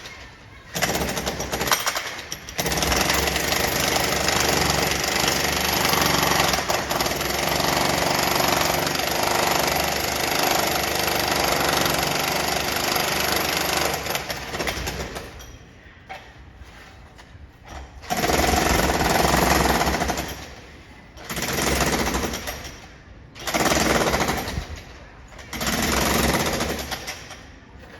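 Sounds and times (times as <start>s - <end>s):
demolition hammer breaking concrete: 0.7s - 15.4s, 25.4s - 27.4s.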